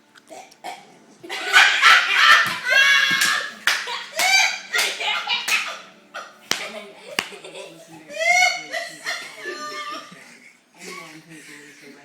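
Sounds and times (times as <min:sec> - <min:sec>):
sharp slaps or claps: 0:02.4 - 0:05.6, 0:06.5 - 0:07.4.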